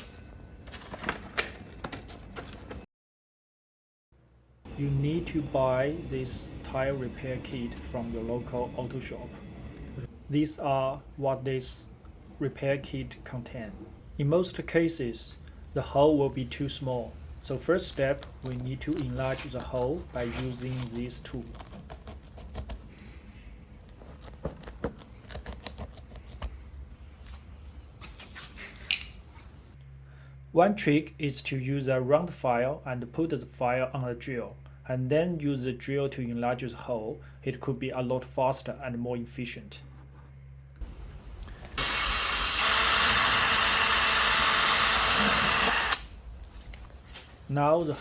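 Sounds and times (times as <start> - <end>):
drill click: 41.7 - 46.1
electric drill whirring: 41.7 - 46.1.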